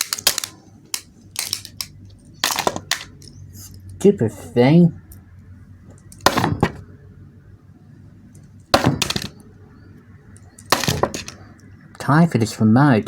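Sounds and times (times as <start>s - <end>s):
small hard objects clattering: 0.0s - 3.2s, 10.6s - 11.4s.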